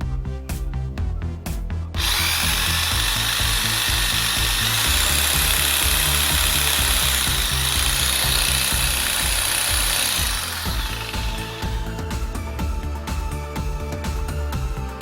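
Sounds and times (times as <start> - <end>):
background music: 0.0 - 15.0
jigsaw running with high whine: 2.0 - 13.0.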